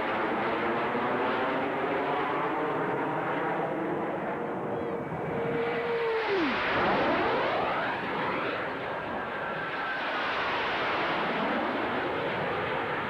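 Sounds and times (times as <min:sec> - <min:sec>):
airplane engine passing: 0:02.9 - 0:10.0.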